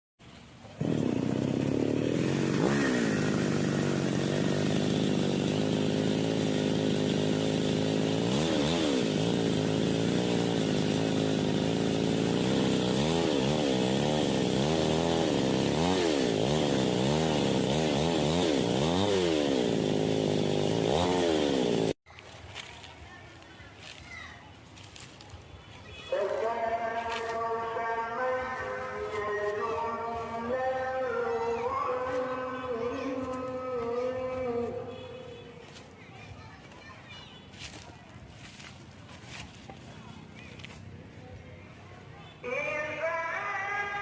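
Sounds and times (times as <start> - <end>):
chainsaw cutting wood: 0.6 - 22.0.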